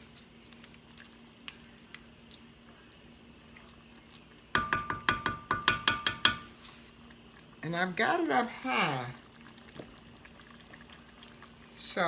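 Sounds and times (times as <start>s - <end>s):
metal spoon striking cooking pot: 4.6s - 6.5s.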